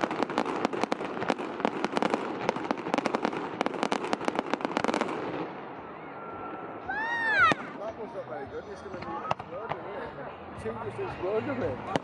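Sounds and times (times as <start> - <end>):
fireworks crackling: 0.0 - 5.9, 11.7 - 12.0.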